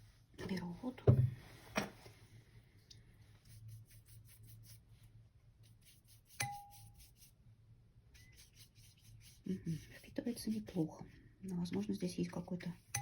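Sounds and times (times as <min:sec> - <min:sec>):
brush strokes on wet paper: 0:03.2 - 0:07.4, 0:08.1 - 0:11.1.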